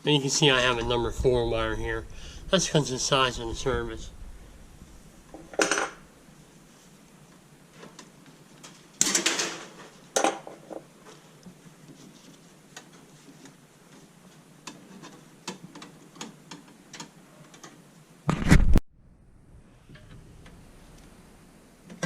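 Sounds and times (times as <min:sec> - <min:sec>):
heavy bump: 0:00.6 - 0:06.1
scraping rustles: 0:11.0 - 0:15.3.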